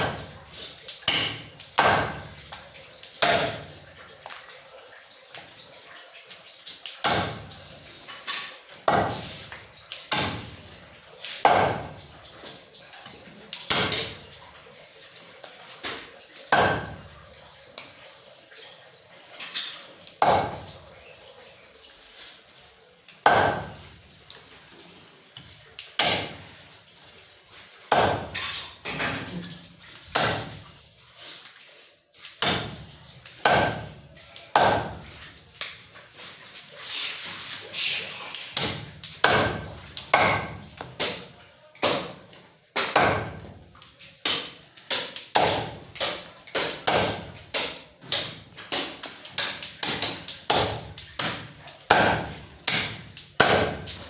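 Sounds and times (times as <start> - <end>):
cleaver chopping meat and bone: 1.0 - 2.3, 3.2 - 3.7, 7.0 - 7.5, 8.8 - 9.3, 10.1 - 10.6, 11.4 - 12.0, 16.5 - 17.1, 20.2 - 20.7, 23.2 - 23.8, 26.0 - 26.4, 27.9 - 28.4, 30.1 - 30.6, 32.4 - 32.8, 33.4 - 35.0, 38.5 - 42.2, 42.8 - 43.5, 44.3 - 54.0.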